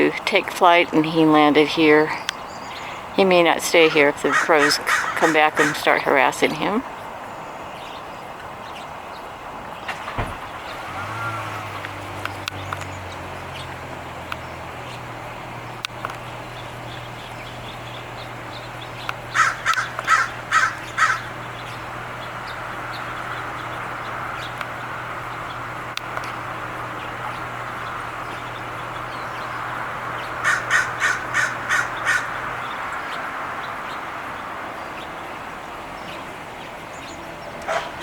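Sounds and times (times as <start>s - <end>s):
crows cawing: 4.2s - 6.0s, 19.3s - 21.6s, 29.2s - 33.3s.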